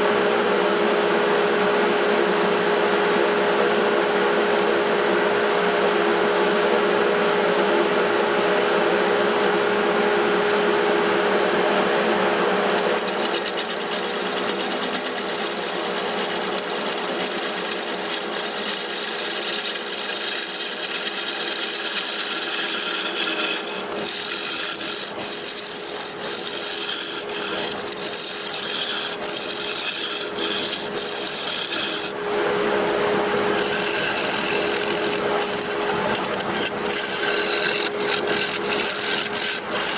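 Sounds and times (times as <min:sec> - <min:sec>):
wood lathe humming: 0:09.1 - 0:39.9
gouge scraping wood: 0:12.5 - 0:39.9.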